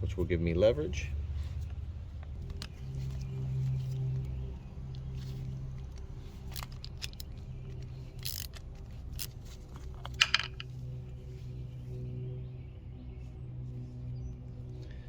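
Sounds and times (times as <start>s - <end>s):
steady low hum: 0.0s - 15.0s
screwdriver metallic clicks: 5.9s - 8.6s.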